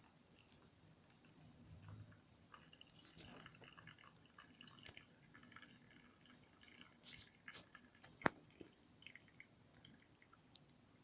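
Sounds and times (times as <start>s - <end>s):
water dripping through coffee: 0.0s - 10.8s.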